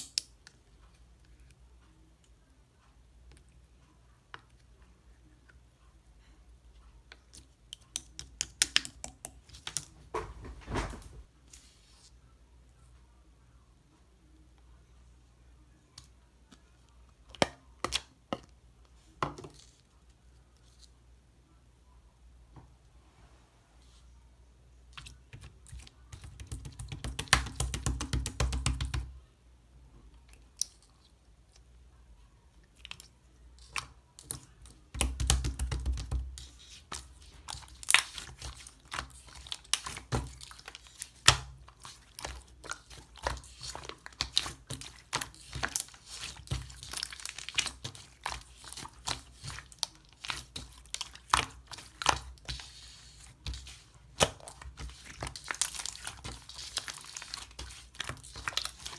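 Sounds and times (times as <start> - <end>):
slime popping and crackling: 35.0 - 58.9.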